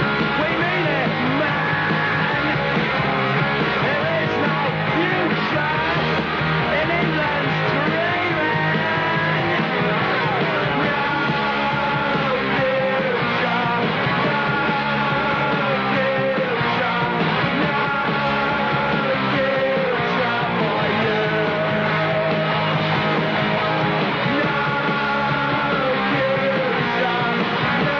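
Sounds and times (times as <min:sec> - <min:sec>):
loud punk rock music: 0:00.0 - 0:27.9.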